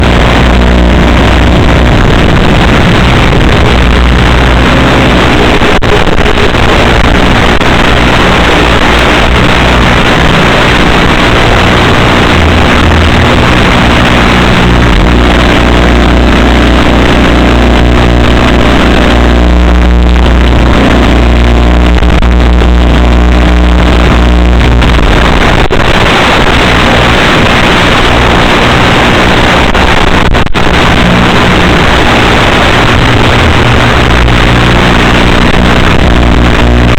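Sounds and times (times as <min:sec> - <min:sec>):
wind noise rushing: 0:00.0 - 0:22.9.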